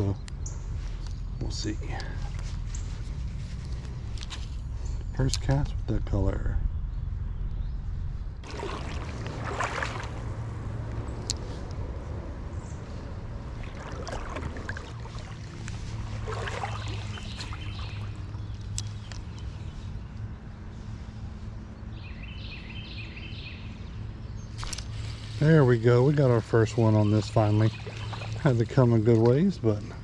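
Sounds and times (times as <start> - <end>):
steady low rumble: 0.0 - 22.1
creek water trickling and gurgling: 8.4 - 11.5, 12.7 - 19.5, 24.8 - 30.0
water swishing: 8.4 - 11.6, 12.8 - 18.8, 25.6 - 29.0.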